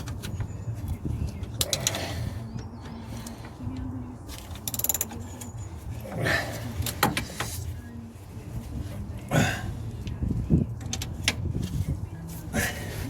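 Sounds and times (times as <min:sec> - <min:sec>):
ratchet spanner clicking: 0:04.6 - 0:05.6.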